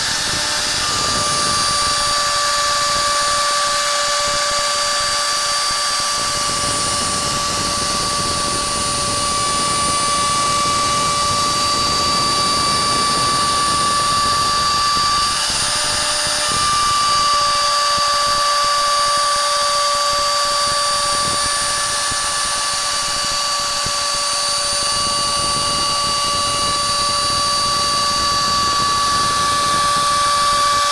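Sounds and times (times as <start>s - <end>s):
hiss of cutting wood: 0.0s - 11.6s
router spindle whining: 0.0s - 30.9s.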